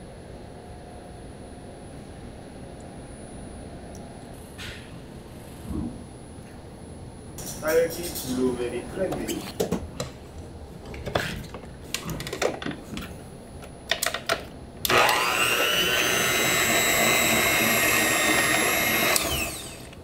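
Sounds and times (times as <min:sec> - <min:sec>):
handling clicks and knocks: 0:10.8 - 0:14.5
food processor motor whining: 0:14.8 - 0:20.0.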